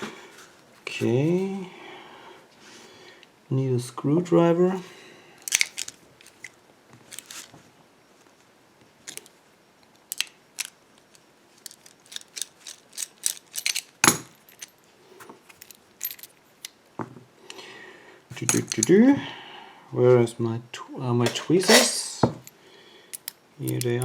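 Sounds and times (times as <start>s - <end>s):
small metal parts clattering: 5.4s - 7.5s, 10.1s - 16.7s, 18.4s - 19.0s, 21.6s - 24.0s.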